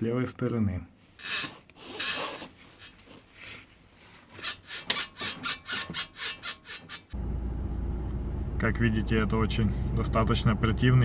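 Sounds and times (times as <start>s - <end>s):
car suspension squeaking: 4.0s - 7.2s.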